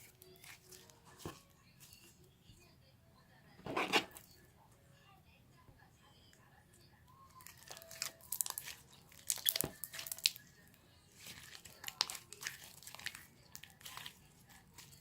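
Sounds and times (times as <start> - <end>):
slime crackling and popping: 7.4 - 10.5, 11.2 - 15.0.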